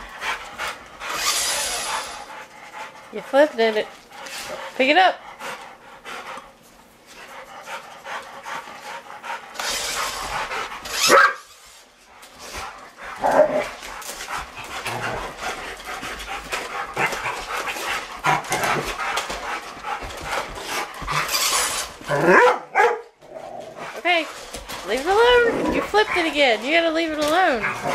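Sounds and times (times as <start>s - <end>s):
dogs panting: 0.0s - 22.9s, 23.6s - 27.9s
dog barking: 11.0s - 11.5s, 22.2s - 23.1s.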